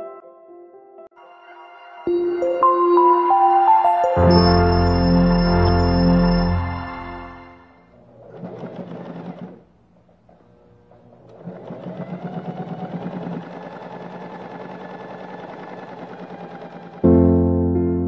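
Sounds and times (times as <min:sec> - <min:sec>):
sewing machine stitching: 0:08.0 - 0:17.1.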